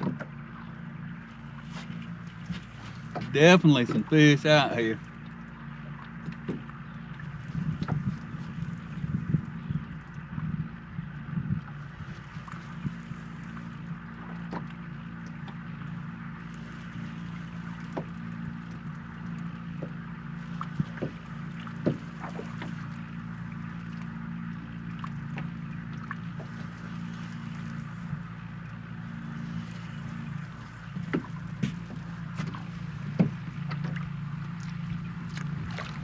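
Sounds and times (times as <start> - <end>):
light knocks and taps: 0.0 - 0.4, 1.8 - 4.1, 6.1 - 8.4, 17.8 - 20.0, 20.6 - 22.9, 30.9 - 35.5
boat low hum: 0.0 - 36.0.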